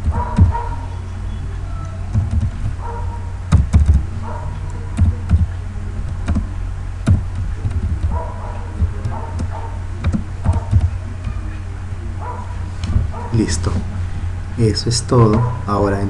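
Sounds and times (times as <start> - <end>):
low electrical hum: 0.0 - 16.0
computer keyboard typing: 2.1 - 2.8, 3.5 - 4.1, 5.0 - 8.2, 8.8 - 11.4.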